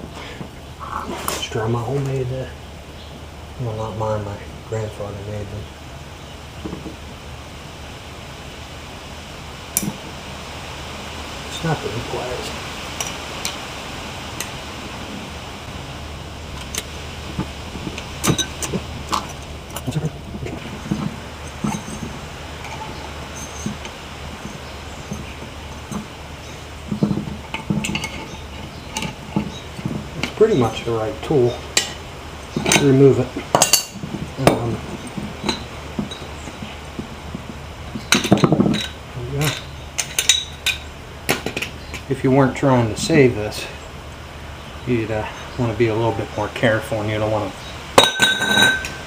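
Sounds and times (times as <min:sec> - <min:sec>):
wind rumbling on microphone: 0:00.0 - 0:49.0
metal tools clinking and scraping: 0:16.6 - 0:37.4, 0:38.0 - 0:42.1, 0:48.0 - 0:49.0.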